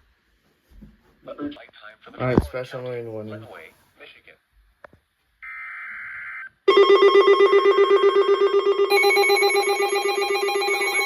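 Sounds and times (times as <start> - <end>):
high alarm tones: 5.4 - 11.0
pulsing electronic alarm: 5.4 - 11.0.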